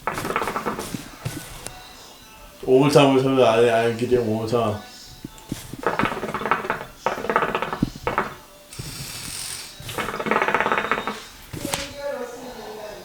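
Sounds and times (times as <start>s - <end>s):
hookah water bubbling: 0.0s - 11.8s
breathy hiss: 0.0s - 13.0s.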